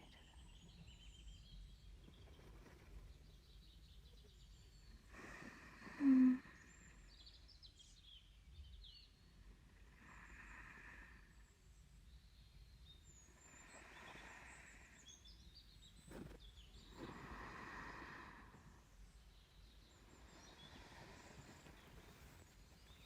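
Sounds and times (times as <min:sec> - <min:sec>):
birds chirping: 0:00.0 - 0:09.5, 0:10.2 - 0:23.0
slow breathing: 0:05.0 - 0:07.2, 0:09.8 - 0:11.6, 0:13.3 - 0:15.4, 0:16.0 - 0:23.0.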